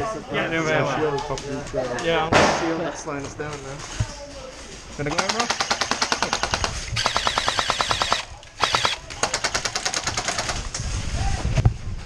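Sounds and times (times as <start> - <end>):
airsoft guns firing bursts: 5.1 - 10.6.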